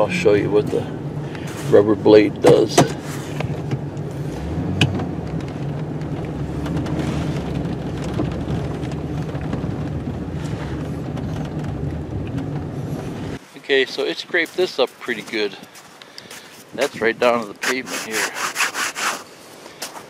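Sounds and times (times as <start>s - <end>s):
vehicle engine idling: 0.0s - 13.4s.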